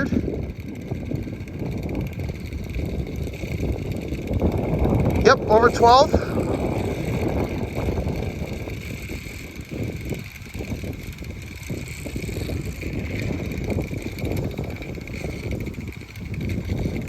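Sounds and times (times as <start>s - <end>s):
fan whirring: 0.0s - 17.0s
wind buffeting microphone: 0.0s - 17.0s.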